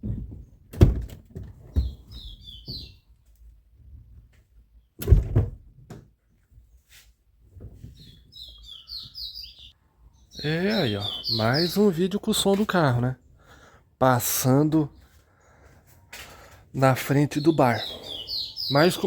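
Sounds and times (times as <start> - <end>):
small birds chirping: 1.6 - 3.2, 7.6 - 19.0.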